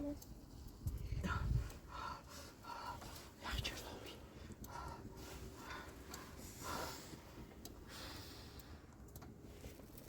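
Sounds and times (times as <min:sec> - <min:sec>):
person breathing heavily: 0:04.3 - 0:08.9.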